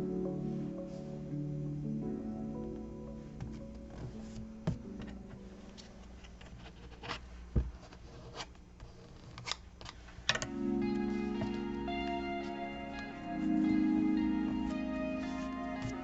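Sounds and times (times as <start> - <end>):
soft guitar music: 0.0 - 5.8, 10.4 - 16.0.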